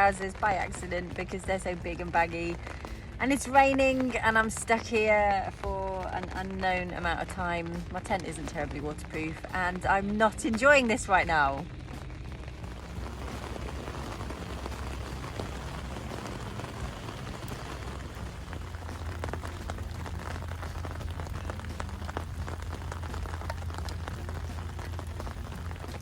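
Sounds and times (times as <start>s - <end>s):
low hum: 0.0s - 26.0s
rain pattering on tent fabric: 0.0s - 26.0s
raindrop ticks: 0.0s - 26.0s.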